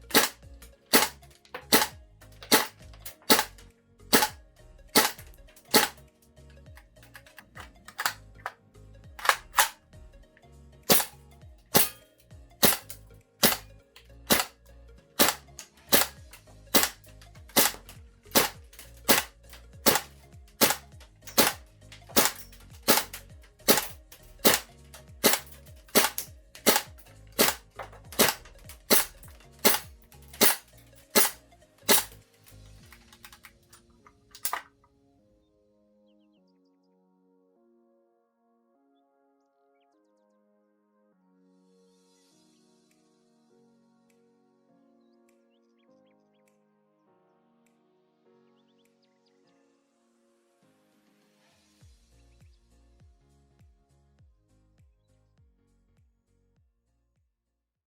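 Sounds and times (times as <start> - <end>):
airsoft rifle shots: 0.0 - 4.4, 5.0 - 6.0, 7.0 - 8.2, 9.2 - 9.8, 10.9 - 12.0, 12.6 - 13.7, 14.3 - 14.5, 15.2 - 32.2.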